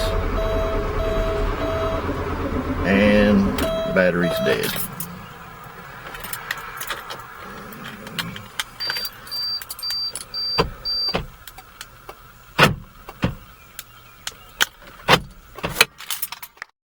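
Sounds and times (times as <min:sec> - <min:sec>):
short high beeps: 0:00.0 - 0:02.2, 0:03.6 - 0:04.8
sharp clicks and knocks: 0:04.5 - 0:16.7.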